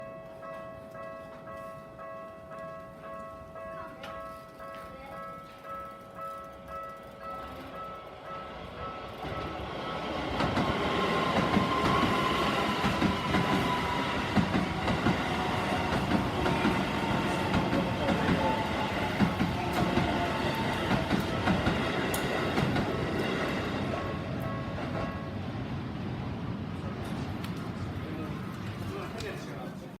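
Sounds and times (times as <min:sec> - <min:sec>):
crossing warning bell ringing: 0:00.0 - 0:25.6
train wheels clacking on rails: 0:05.5 - 0:25.4.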